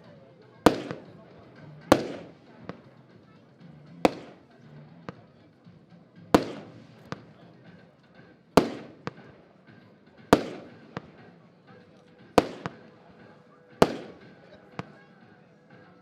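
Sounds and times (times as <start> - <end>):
faint firework crack: 0.6 - 3.4, 4.0 - 5.4, 6.3 - 7.9, 8.6 - 9.6, 10.3 - 15.1
firework bangs: 0.7 - 2.8, 4.0 - 5.2, 6.3 - 7.5, 8.6 - 9.6, 10.3 - 11.4, 12.2 - 15.0.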